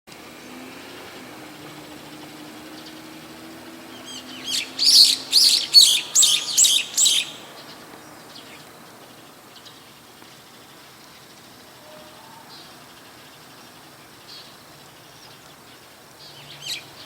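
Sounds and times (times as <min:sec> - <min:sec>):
bird calling shrill notes: 0:03.9 - 0:07.6
faint bird calls: 0:03.9 - 0:07.8.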